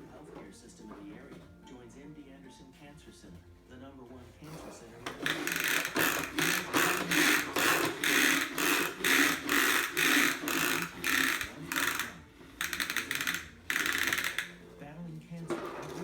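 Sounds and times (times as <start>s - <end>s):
vacuum rattling and clicking: 4.4s - 14.7s, 15.3s - 16.0s.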